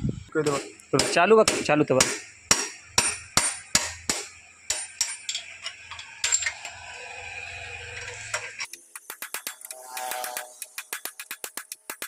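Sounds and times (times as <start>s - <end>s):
hammer striking metal rod: 0.4s - 5.5s.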